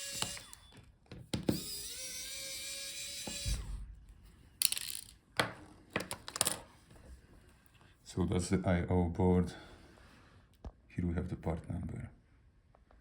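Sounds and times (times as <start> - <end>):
electric screwdriver whining: 0.0 - 3.8.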